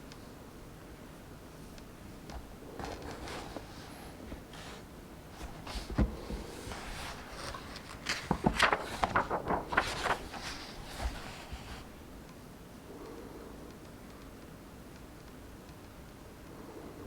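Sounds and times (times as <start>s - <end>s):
paper rustling: 2.8s - 12.0s.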